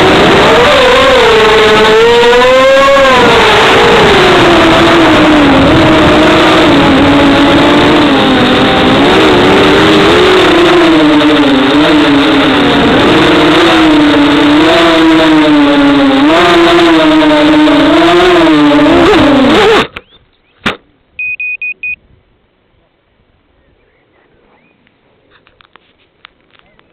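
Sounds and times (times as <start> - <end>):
drone motors whining: 0.0 - 20.2
short high beeps: 21.2 - 22.0.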